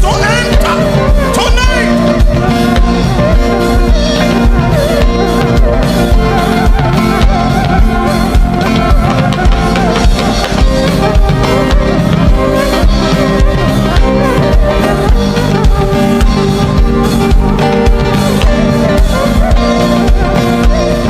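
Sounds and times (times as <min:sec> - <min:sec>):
drum kit beat: 0:00.0 - 0:21.0
worship band music: 0:00.0 - 0:21.0.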